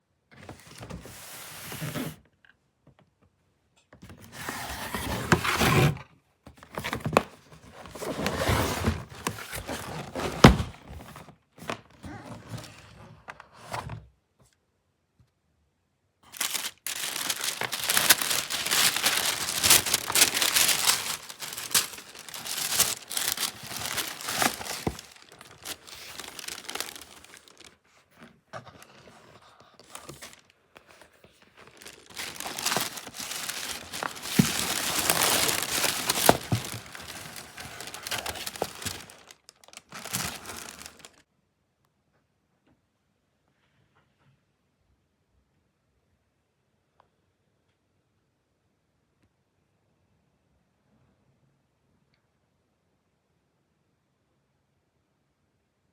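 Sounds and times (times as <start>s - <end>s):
paper wrapping crinkling and tearing: 16.3s - 27.8s, 28.7s - 41.2s.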